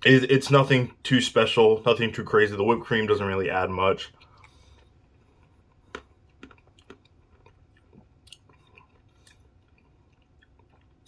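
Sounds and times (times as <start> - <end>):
person chewing: 4.1 - 11.0.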